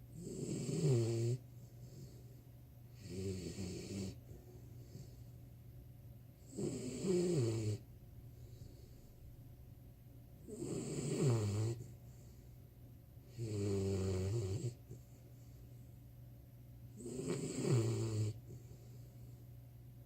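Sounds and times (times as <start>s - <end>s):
puppy snoring: 0.0s - 5.3s, 6.4s - 9.1s, 10.4s - 12.4s, 13.2s - 15.2s, 16.9s - 19.4s.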